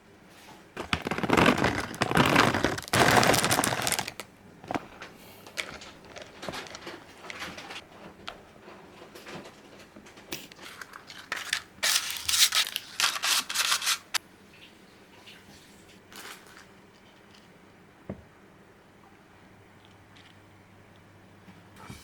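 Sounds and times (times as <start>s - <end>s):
packaging rustling: 0.8s - 7.8s, 10.6s - 14.2s.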